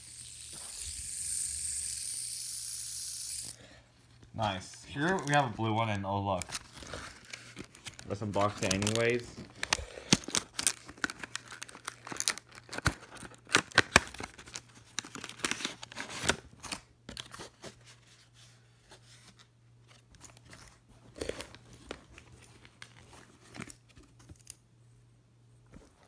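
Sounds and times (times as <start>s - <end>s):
packaging tearing and crinkling: 4.4s - 17.6s, 20.2s - 24.6s.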